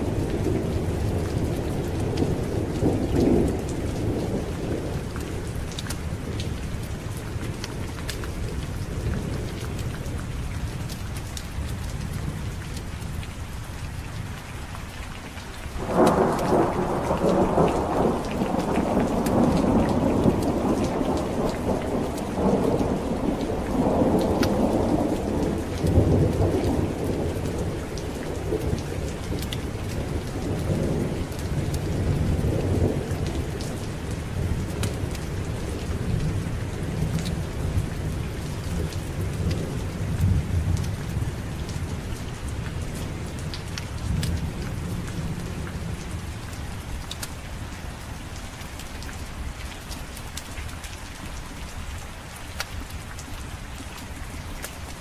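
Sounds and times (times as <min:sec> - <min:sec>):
heavy rain: 0:00.0 - 0:55.0
thunder rolling: 0:15.8 - 0:28.5.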